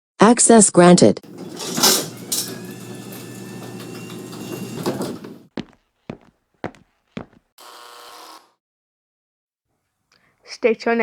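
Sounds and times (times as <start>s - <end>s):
sliding door humming: 1.2s - 5.5s
footsteps: 1.2s - 7.5s.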